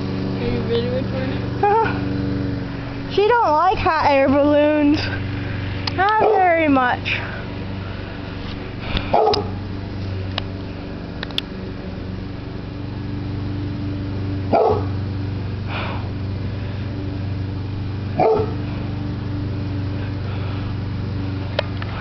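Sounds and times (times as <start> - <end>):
steady low hum: 0.0 - 22.0
dog barking: 6.2 - 6.5, 9.1 - 9.6, 14.5 - 14.9, 18.2 - 18.6.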